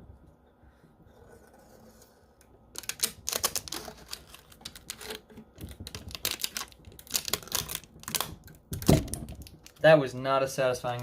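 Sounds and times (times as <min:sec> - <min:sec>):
plastic film peeling crackle: 0:02.7 - 0:10.2.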